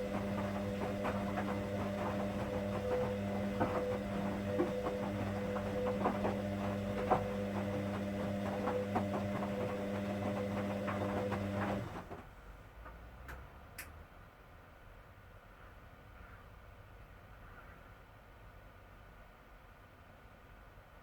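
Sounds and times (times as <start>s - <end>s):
washing machine clicks and knocks: 0.0s - 12.2s
washing machine motor humming: 0.0s - 12.3s.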